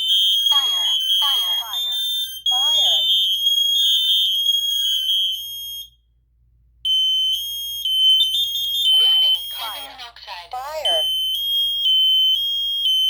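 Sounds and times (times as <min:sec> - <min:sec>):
spoken alarm warning: 0:00.0 - 0:03.5, 0:08.7 - 0:11.4.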